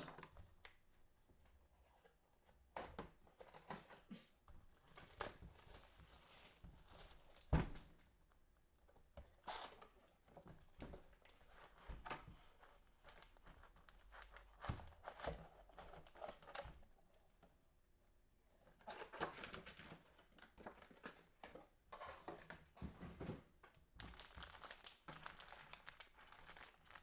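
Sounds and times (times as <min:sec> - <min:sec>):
cellophane crinkling and tearing: 0:05.0 - 0:07.5, 0:24.0 - 0:27.0.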